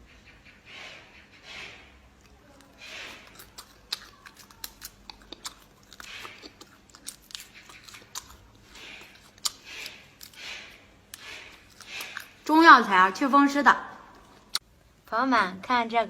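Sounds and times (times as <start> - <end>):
person chewing with sharp crunches: 1.6 - 13.3, 14.0 - 15.1.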